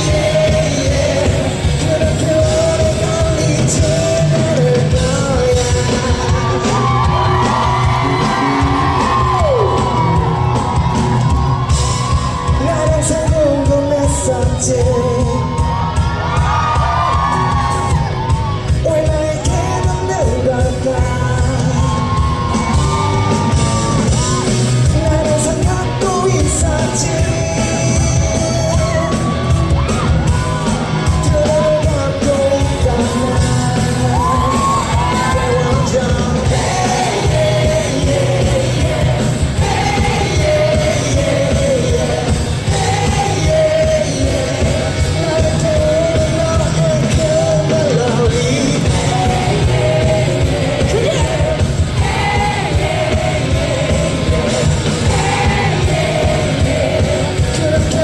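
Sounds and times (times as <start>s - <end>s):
man singing: 0.0s - 10.0s, 12.3s - 15.8s, 18.7s - 22.5s, 24.8s - 29.5s, 31.0s - 51.8s, 52.7s - 58.0s
rock band playing loudly: 0.0s - 58.0s.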